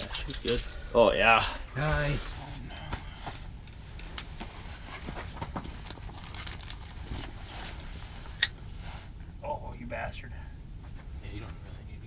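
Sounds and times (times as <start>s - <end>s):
low steady hum: 0.0s - 12.0s
faint clicks and rustles: 1.9s - 9.3s.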